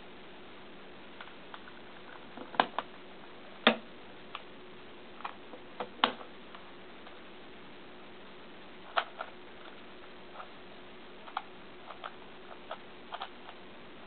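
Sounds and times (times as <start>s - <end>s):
faint steady hum: 0.0s - 14.0s
puzzle cube plastic clicks: 11.2s - 13.6s.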